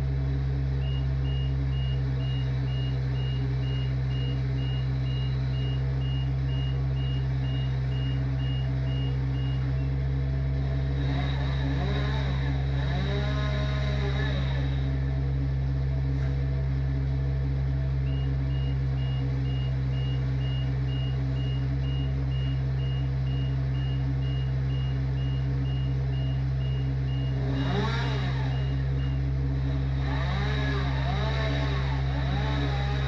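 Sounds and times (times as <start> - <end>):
heavy engine running: 0.0 - 33.0
backup alarm beeping: 0.8 - 10.0, 18.0 - 29.3.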